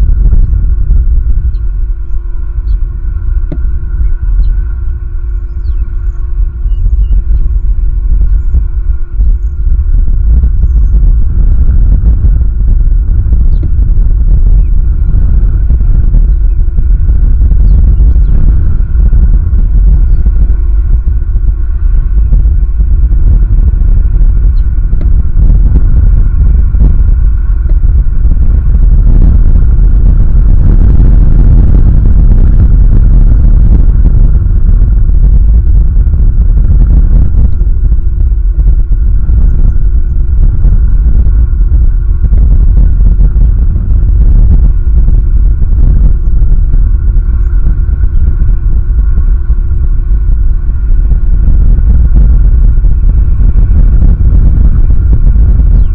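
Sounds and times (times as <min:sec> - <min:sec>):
faint steady hum: 0:00.0 - 0:55.9
wind buffeting microphone: 0:00.0 - 0:55.9.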